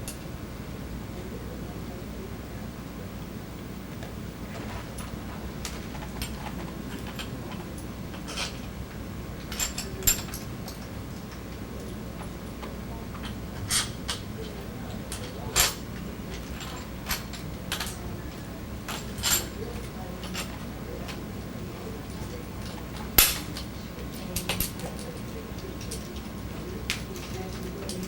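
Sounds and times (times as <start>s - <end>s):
steady low hum: 0.0s - 28.0s
metal tubes clicking and clinking: 9.4s - 18.1s, 18.9s - 21.2s, 22.0s - 28.0s.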